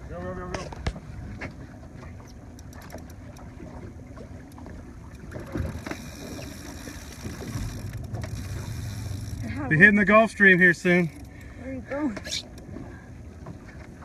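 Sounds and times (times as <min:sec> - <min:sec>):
boat motor rumbling: 0:00.0 - 0:14.0
faint clicks: 0:11.0 - 0:11.6.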